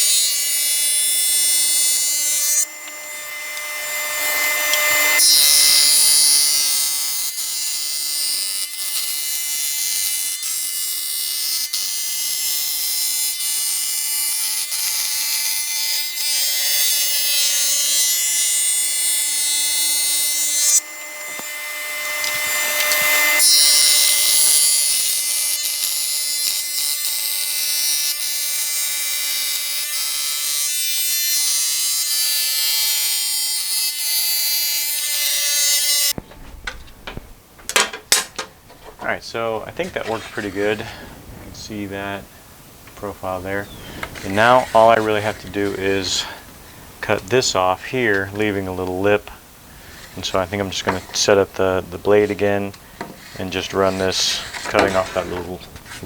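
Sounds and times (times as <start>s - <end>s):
table saw whining: 0.0s - 41.3s, 42.2s - 56.0s.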